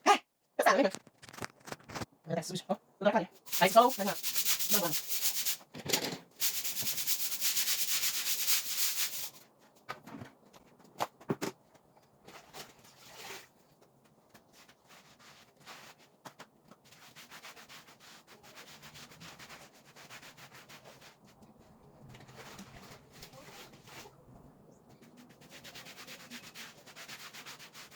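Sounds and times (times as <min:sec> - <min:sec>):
rubbing: 0:03.4 - 0:05.6, 0:06.4 - 0:09.4
scrubbing strokes: 0:03.4 - 0:05.6, 0:06.4 - 0:09.4, 0:12.2 - 0:13.8.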